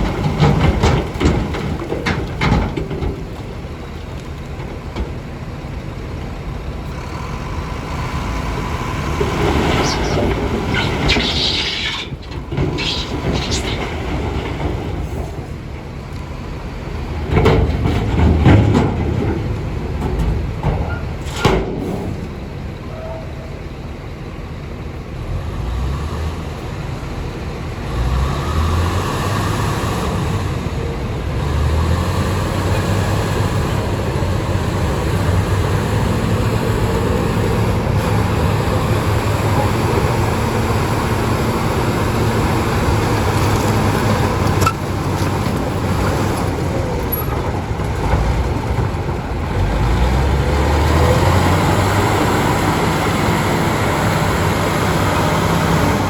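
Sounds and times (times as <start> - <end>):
tracks clattering: 0.0 - 5.4, 8.6 - 16.4, 17.0 - 22.4
bulldozer diesel engine: 0.0 - 56.0.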